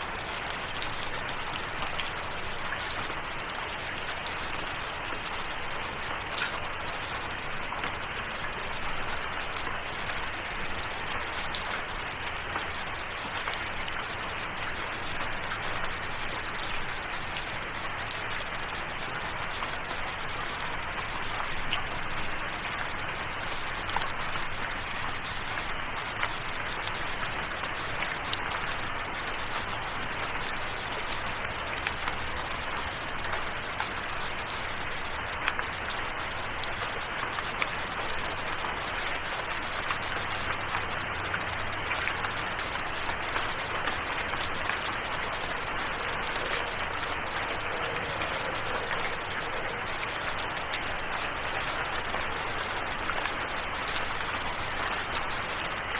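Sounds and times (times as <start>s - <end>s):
steady rain falling: 0.0s - 55.9s.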